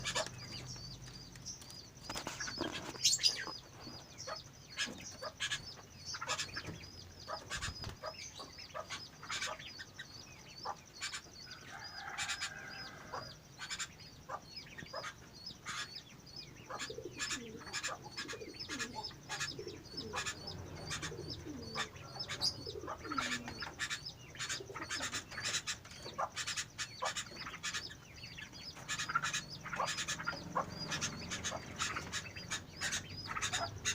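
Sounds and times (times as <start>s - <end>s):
bird falling calls: 16.7s - 28.0s.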